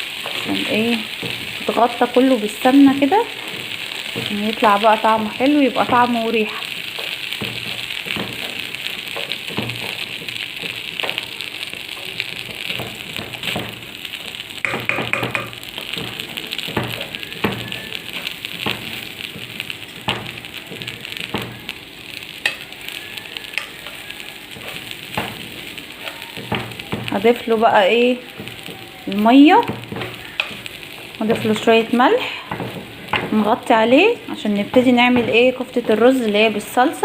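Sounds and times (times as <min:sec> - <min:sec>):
food sizzling in a pot: 0:00.0 - 0:37.0.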